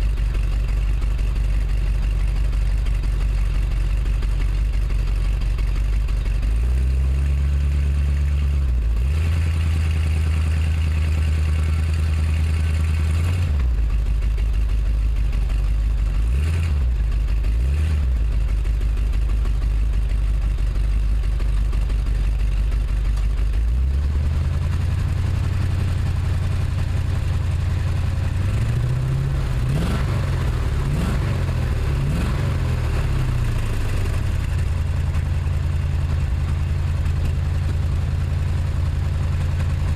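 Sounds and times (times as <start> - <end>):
truck engine misfiring: 0.0 - 7.2, 9.5 - 39.9
engine throttle blips: 0.0 - 39.9.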